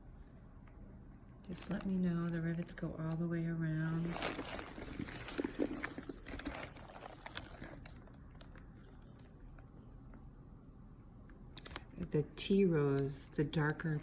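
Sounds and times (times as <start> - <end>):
leather bag rustling: 3.8 - 8.0.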